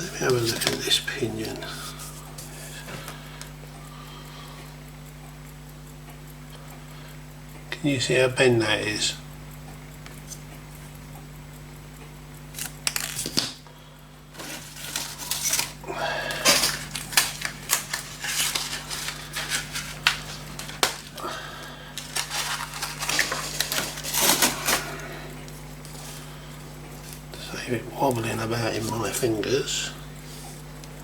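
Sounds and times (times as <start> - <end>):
steady low hum: 0.0 - 31.0
metal parts clicking and tapping: 14.3 - 21.4, 22.0 - 25.0.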